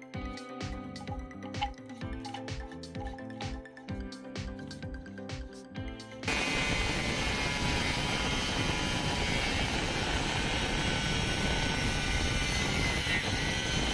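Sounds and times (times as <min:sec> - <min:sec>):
angle grinder whining: 0:06.3 - 0:13.9.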